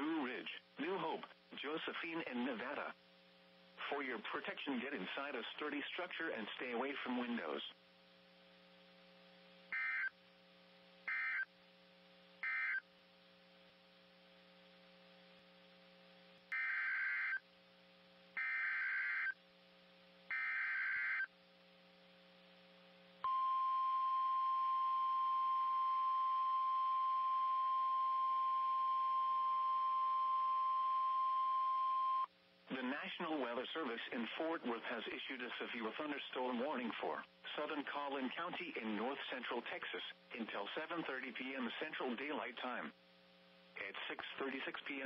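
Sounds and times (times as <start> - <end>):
faint radio hum: 0.0 - 17.2, 32.6 - 45.0
steady warning tone: 11.1 - 11.5, 12.4 - 12.8, 18.4 - 19.4, 20.3 - 21.3, 23.2 - 32.3.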